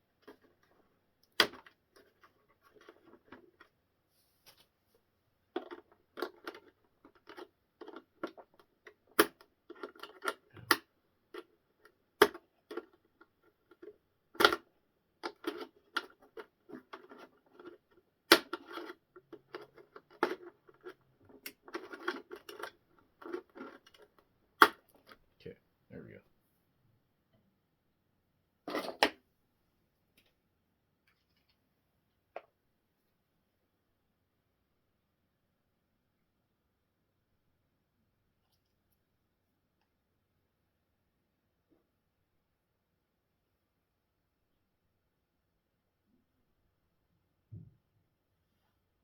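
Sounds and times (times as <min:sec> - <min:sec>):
plastic model parts clicking: 0:05.6 - 0:11.5, 0:12.2 - 0:24.8.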